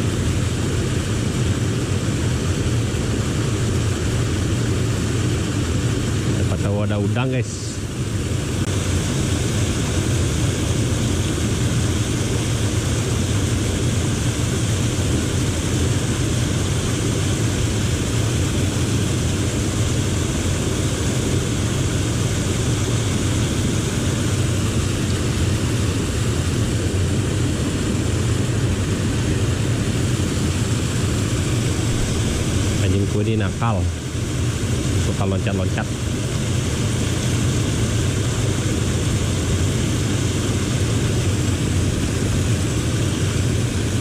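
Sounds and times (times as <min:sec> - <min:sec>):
steady rushing noise: 0:00.0 - 0:44.0
low rumble: 0:28.2 - 0:35.2.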